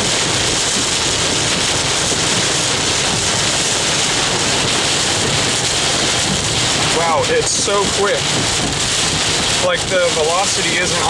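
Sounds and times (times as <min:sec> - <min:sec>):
heavy rain and wind: 0:00.0 - 0:11.0.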